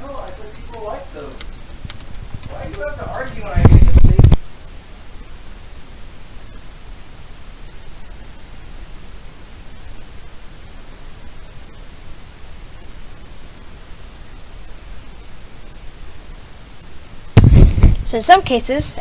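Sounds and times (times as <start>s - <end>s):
microphone static hiss: 0.0s - 19.0s
faint clicks: 0.2s - 3.0s.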